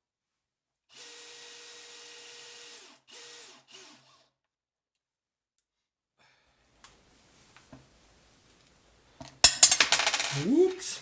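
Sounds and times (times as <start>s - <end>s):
electric power driver whirring: 1.0s - 4.1s.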